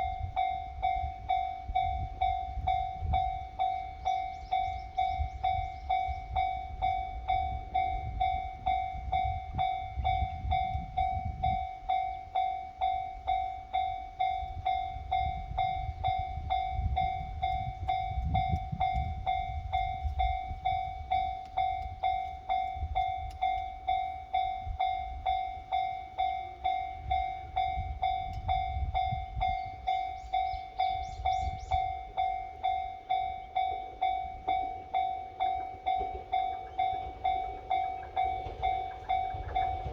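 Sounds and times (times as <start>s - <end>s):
level-crossing warning bell: 0.0s - 39.9s.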